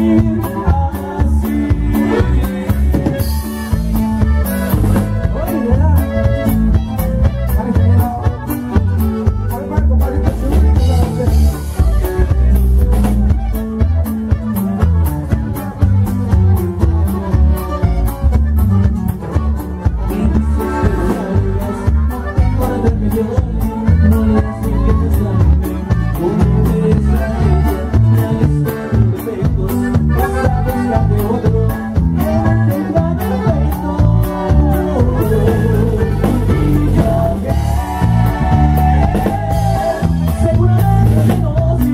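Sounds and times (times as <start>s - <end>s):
band playing: 0.0s - 41.9s
bass line: 0.0s - 41.9s.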